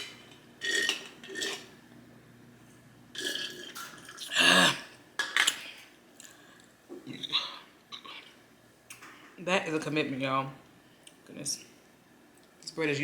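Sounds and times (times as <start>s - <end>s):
loud burp: 3.2s - 4.9s.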